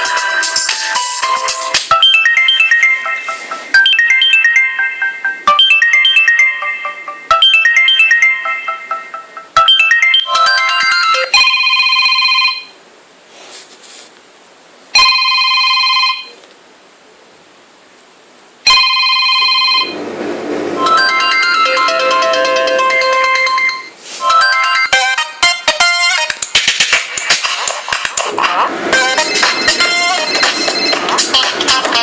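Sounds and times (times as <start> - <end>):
ringtone tune of short notes: 0.0 - 12.6, 20.8 - 26.9, 29.0 - 32.0
electronic ring: 0.0 - 12.7, 18.7 - 20.0, 20.8 - 26.3, 29.0 - 31.5
melodic ringtone: 0.0 - 12.7, 18.7 - 20.0, 20.8 - 32.0.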